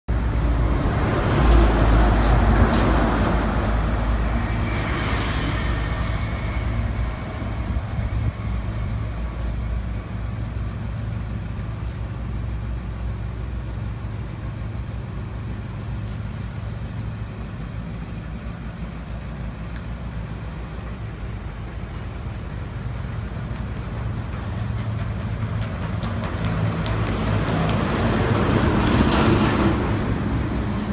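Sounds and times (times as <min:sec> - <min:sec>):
vehicle engine hum: 0:00.1 - 0:30.9.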